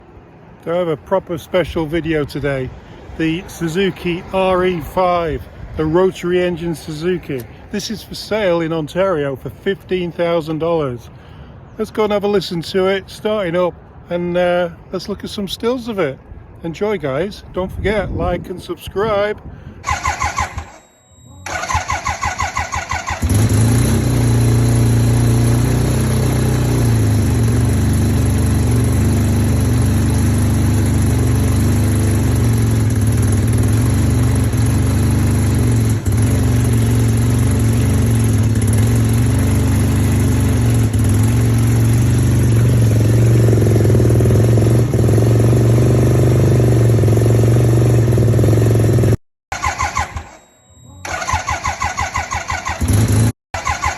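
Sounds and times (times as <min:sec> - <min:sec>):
engine idling: 0:19.8 - 0:20.8, 0:21.4 - 0:45.7, 0:51.0 - 0:53.9
engine cranking: 0:19.8 - 0:27.3, 0:49.5 - 0:53.9.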